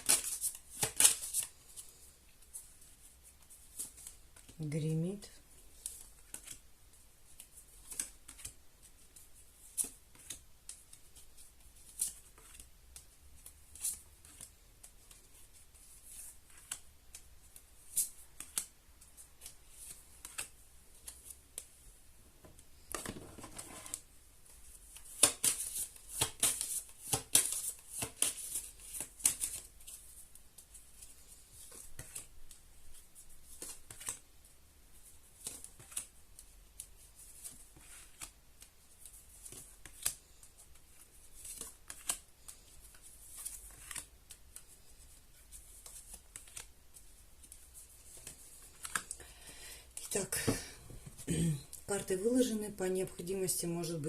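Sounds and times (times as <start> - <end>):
deck of cards shuffling: 0.0 - 4.7, 22.8 - 34.3, 36.8 - 49.2.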